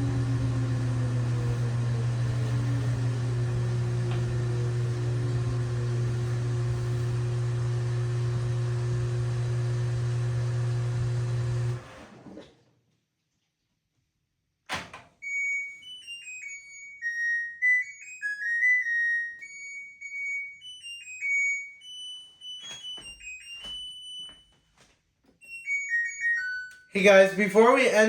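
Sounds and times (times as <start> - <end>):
washing machine beep tune: 0.0 - 11.7, 15.2 - 24.8, 25.4 - 28.0.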